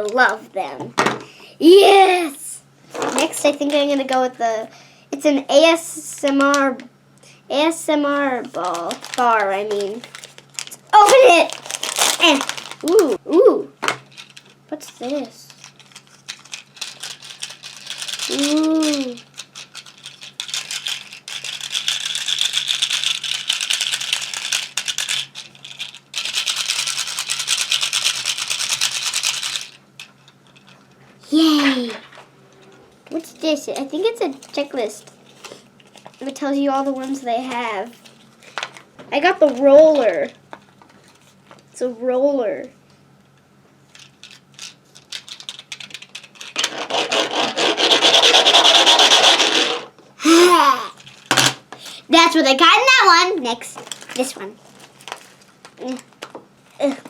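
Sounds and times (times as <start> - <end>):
plastic toy rapid clicks: 15.5 - 29.8, 44.0 - 49.9.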